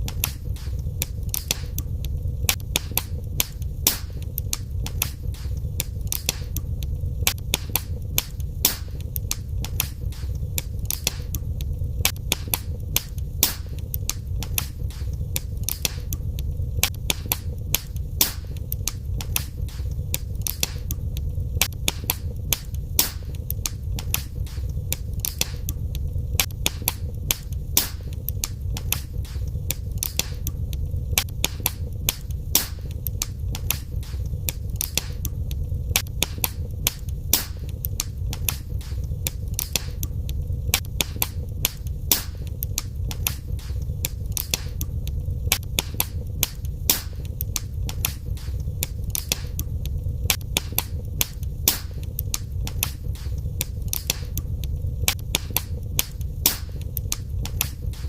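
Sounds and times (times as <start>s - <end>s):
low rumble of flames: 0.0s - 58.0s
wood fire crackling and popping: 0.0s - 58.0s.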